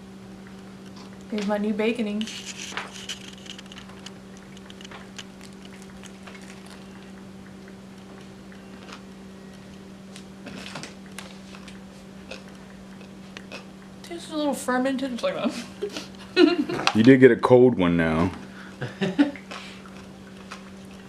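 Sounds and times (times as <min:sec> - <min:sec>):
low electrical hum: 0:00.0 - 0:21.0
faint chewing: 0:00.4 - 0:01.5, 0:02.2 - 0:14.2, 0:19.3 - 0:21.0.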